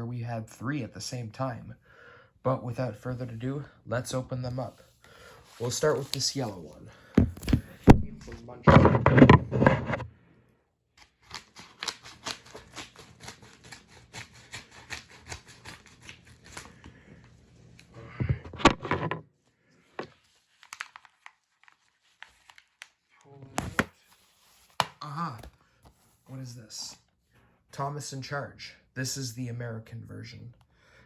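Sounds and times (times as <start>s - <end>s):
handling rustles and knocks: 5.6s - 10.1s, 18.1s - 19.3s
package wrapping tearing: 11.0s - 16.9s, 20.2s - 23.8s.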